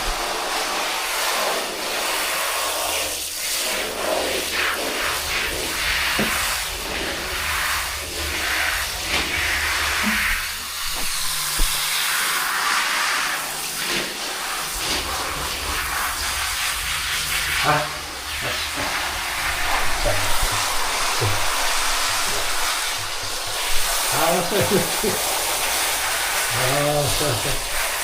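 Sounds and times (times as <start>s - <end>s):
shower water spraying: 0.0s - 28.0s
knock: 6.2s - 6.4s.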